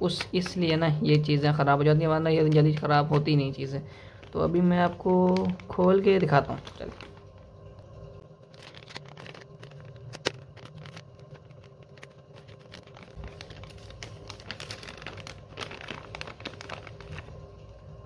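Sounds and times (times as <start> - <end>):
packaging crinkling and rustling: 2.0 - 18.0.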